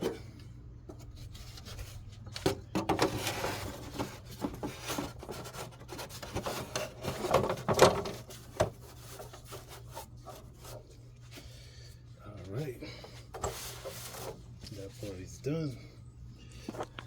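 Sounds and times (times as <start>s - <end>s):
plastic cover rubbing and clicking: 2.4s - 10.8s.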